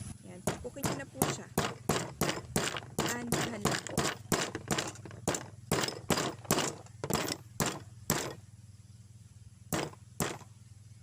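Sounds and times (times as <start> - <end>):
hammer tapping nail on dish: 0.4 - 8.4, 9.8 - 10.4.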